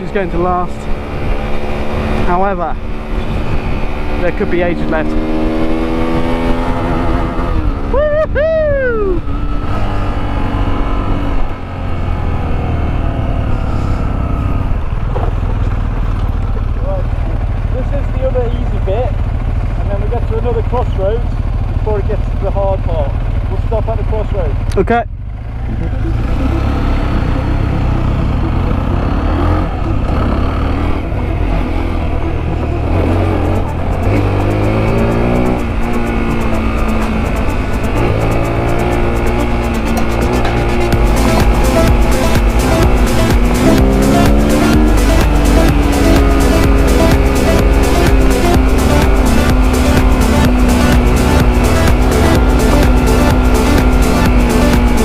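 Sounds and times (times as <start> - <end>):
motorcycle engine running: 0.0 - 55.0
heavy low rumble: 10.1 - 55.0
music with a steady beat: 32.7 - 55.0.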